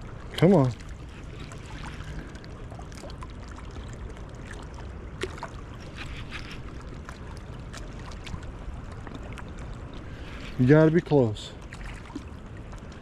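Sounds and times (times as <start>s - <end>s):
river current rushing: 9.6s - 12.2s.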